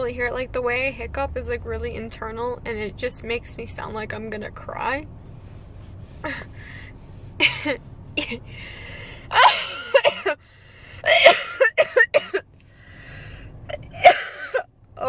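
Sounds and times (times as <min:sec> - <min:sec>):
woman gasping inhales: 0:06.2 - 0:07.0, 0:08.4 - 0:09.3, 0:10.4 - 0:11.1, 0:12.7 - 0:13.5
woman coughing: 0:07.4 - 0:08.5, 0:09.3 - 0:10.4, 0:11.1 - 0:12.4, 0:13.7 - 0:14.7.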